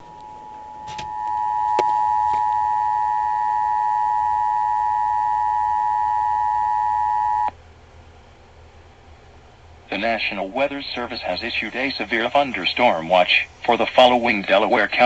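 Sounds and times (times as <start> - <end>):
two-tone alarm: 0.0 - 7.5.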